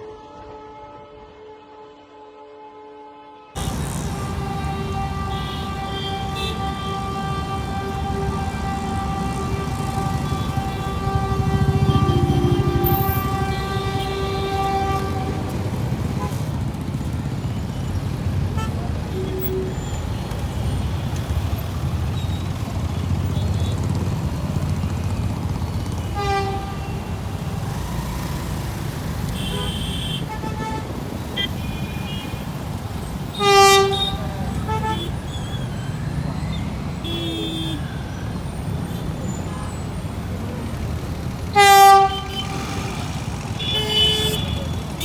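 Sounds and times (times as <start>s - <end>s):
car horn honks: 3.6s - 24.6s, 25.4s - 35.4s, 36.9s - 38.2s, 41.4s - 45.0s
traffic rumble: 3.6s - 45.0s.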